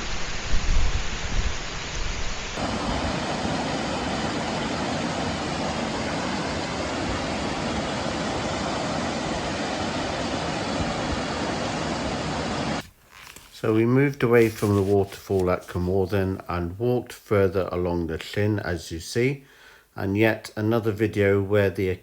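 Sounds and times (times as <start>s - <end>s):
waterfall rushing: 0.0s - 12.8s.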